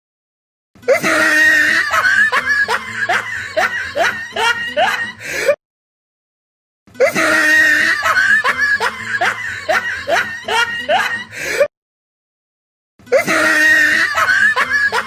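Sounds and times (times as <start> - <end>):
snickering laugh: 0.9 - 5.3, 7.0 - 11.6, 13.1 - 15.0.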